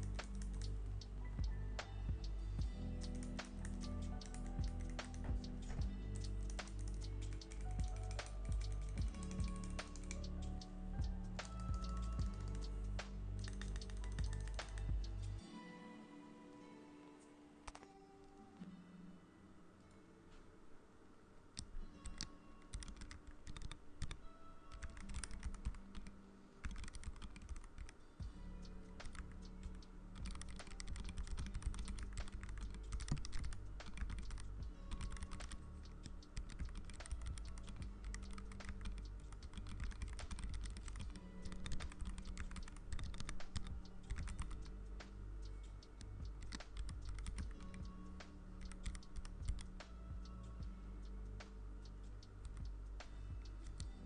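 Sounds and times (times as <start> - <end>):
background music: 0.0 - 54.0
keyboard key clicks: 30.2 - 34.4.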